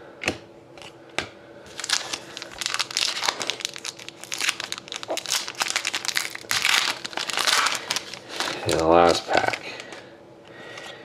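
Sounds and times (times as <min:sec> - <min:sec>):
foil wrapper crinkling and tearing: 0:01.7 - 0:09.9.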